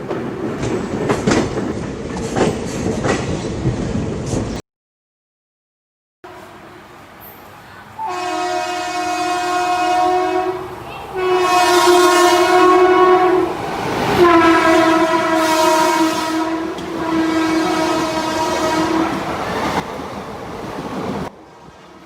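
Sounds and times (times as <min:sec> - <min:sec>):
train horn blasts: 0:06.2 - 0:06.8, 0:08.0 - 0:19.6.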